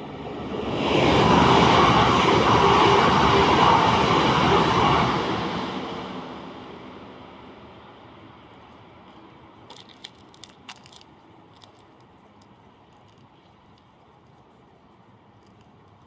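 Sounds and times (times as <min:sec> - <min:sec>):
train passing: 0:00.0 - 0:09.6.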